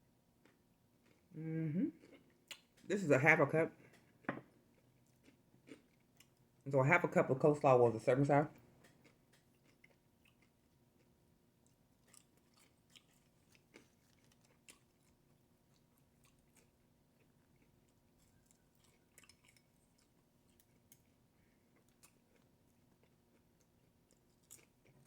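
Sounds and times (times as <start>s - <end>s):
faint chewing: 0.4s - 3.0s, 3.7s - 6.7s, 8.5s - 25.0s.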